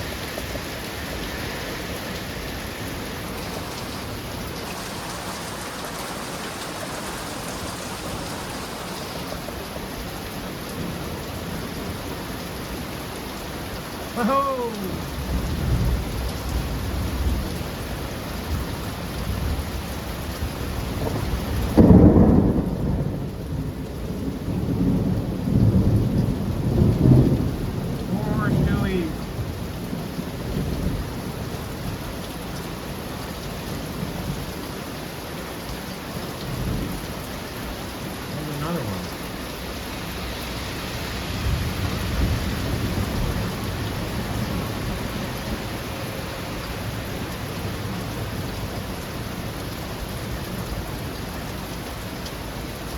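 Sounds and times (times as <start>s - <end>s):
rolling thunder rumbles: 0.0s - 12.1s, 15.0s - 19.8s, 20.4s - 32.0s, 41.2s - 45.8s
heavy rain: 0.0s - 52.9s.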